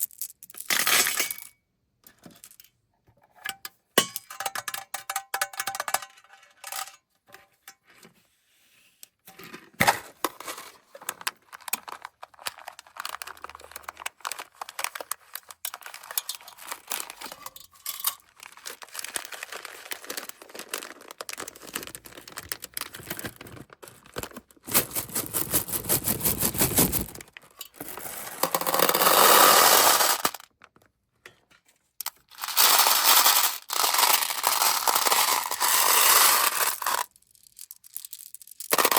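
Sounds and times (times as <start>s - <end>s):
candies rattling on hard surface: 10.3s - 30.5s, 32.1s - 38.9s
plastic packaging crinkling and tearing: 10.4s - 17.5s, 18.1s - 27.4s.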